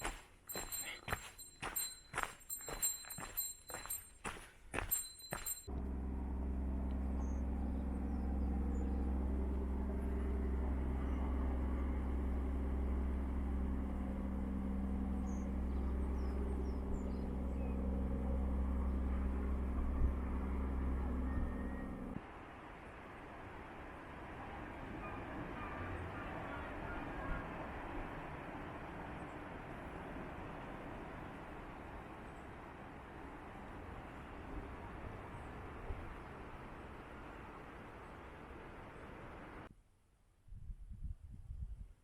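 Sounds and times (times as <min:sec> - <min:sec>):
vehicle engine humming: 0:00.0 - 0:39.7.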